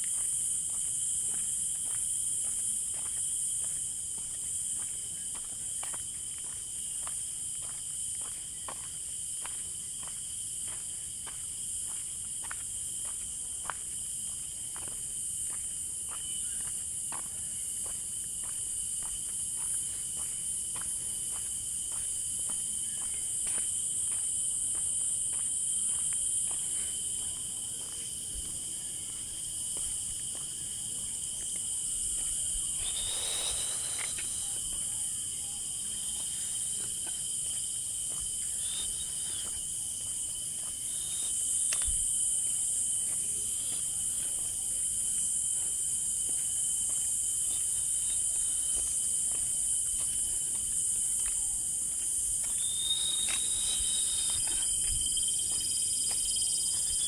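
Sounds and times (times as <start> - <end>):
high-pitched insect chorus: 0.0 - 57.0
footsteps: 24.8 - 42.2, 48.8 - 57.0.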